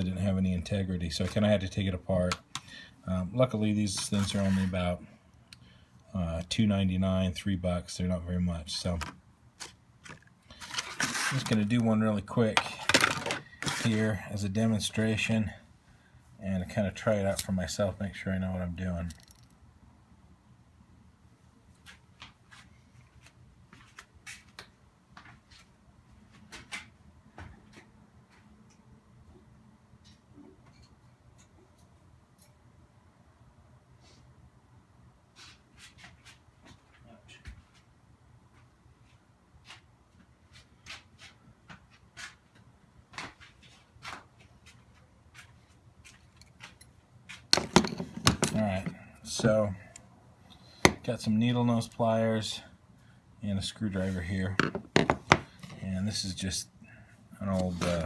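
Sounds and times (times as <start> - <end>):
small tools handled on work surface: 3.9 - 4.8, 9.0 - 11.7, 12.6 - 14.0, 19.1 - 19.5, 46.1 - 49.5
sharp knocks clattering: 47.5 - 48.6.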